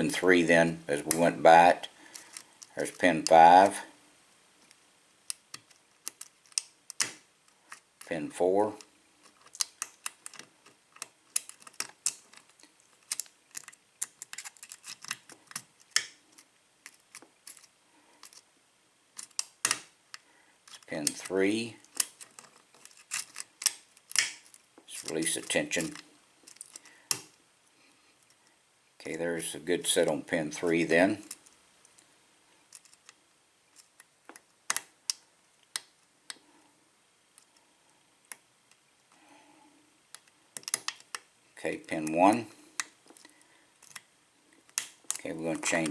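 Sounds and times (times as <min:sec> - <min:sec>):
lock pick clicking on pins: 0:05.3 - 0:07.8, 0:09.2 - 0:18.4, 0:21.8 - 0:24.6, 0:40.1 - 0:41.2
lock pick clicking: 0:40.1 - 0:41.2.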